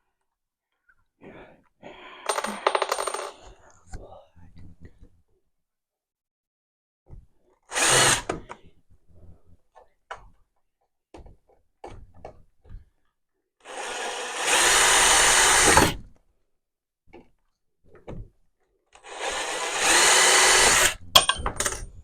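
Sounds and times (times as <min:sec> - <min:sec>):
power drill running: 0:07.7 - 0:08.4, 0:13.6 - 0:16.0, 0:19.0 - 0:21.0.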